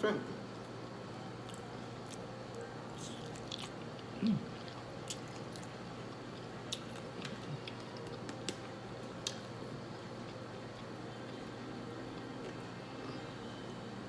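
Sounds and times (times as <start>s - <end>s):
person chewing food: 1.4s - 2.3s, 3.0s - 8.6s.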